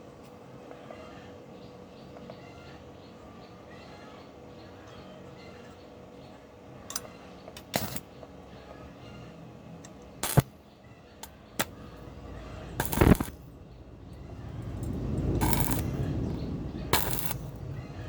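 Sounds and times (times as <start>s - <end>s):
metal parts clattering: 6.9s - 8.0s, 15.4s - 15.9s.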